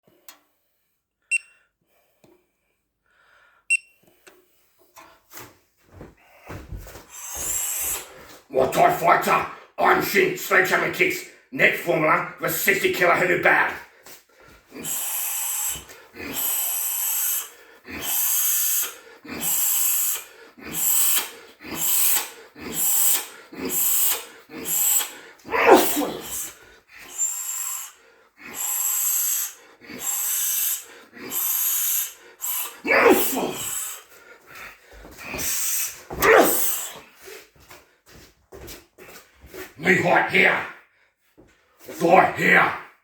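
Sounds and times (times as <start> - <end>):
short electronic beeps: 1.3 - 1.6, 3.7 - 4.0
rhythmic hissing breaths: 13.9 - 37.4.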